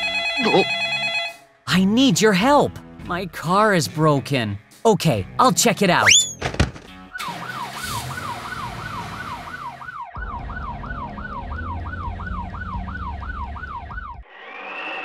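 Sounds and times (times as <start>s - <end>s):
ambulance siren yelping: 0.0s - 1.4s, 6.0s - 6.4s, 7.2s - 14.9s.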